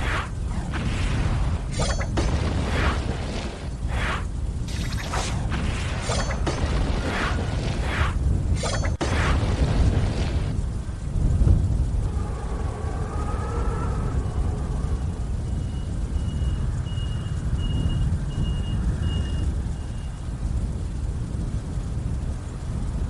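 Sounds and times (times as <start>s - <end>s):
gusty wind rumbling: 0.0s - 23.0s
faint wavering howl: 11.2s - 17.4s
vehicle reversing alarm beeps: 15.1s - 20.3s.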